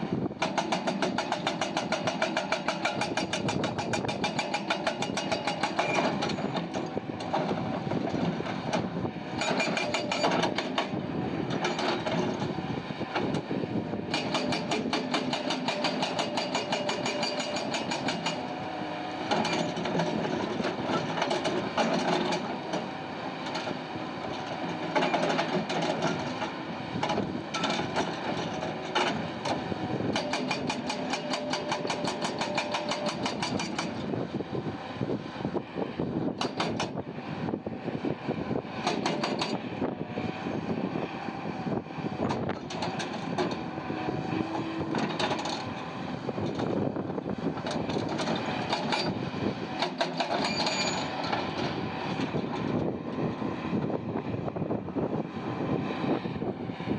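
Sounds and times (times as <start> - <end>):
heavy machinery engines running: 0.0 - 56.9
rock crusher clattering: 14.2 - 18.4, 30.2 - 34.0.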